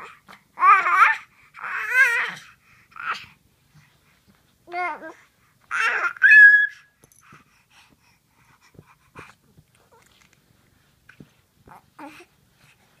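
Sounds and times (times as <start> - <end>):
baby squealing: 5.7 - 6.9.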